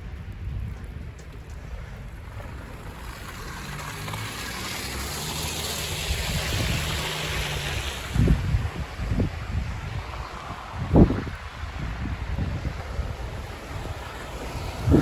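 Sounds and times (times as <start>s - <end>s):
low engine hum: 0.9s - 15.0s
tyres hissing through slush: 2.0s - 8.8s, 12.9s - 15.0s.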